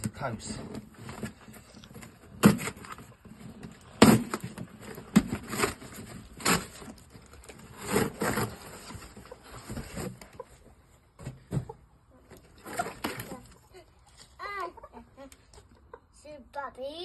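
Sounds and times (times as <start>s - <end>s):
cardboard rustling: 0.6s - 10.4s
cardboard boxes knocking and thumping: 0.7s - 10.4s, 11.2s - 11.8s.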